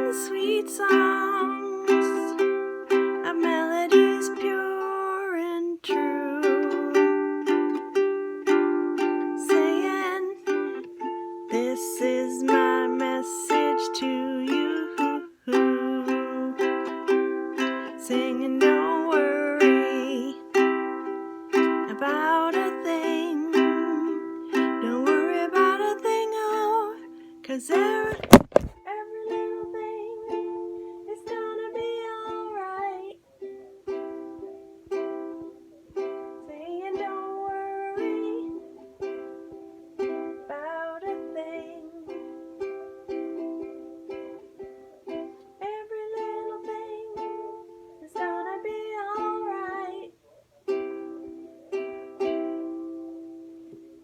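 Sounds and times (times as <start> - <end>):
ukulele strumming: 0.0 - 54.0.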